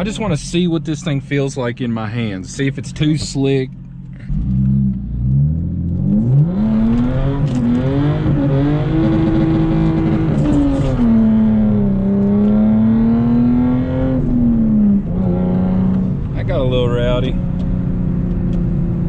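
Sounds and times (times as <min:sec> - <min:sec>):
car engine revving hard: 0:04.3 - 0:16.3.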